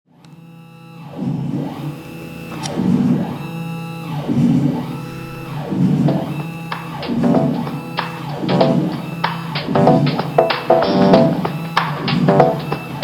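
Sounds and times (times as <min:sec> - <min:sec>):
guitar music: 0:05.3 - 0:13.0.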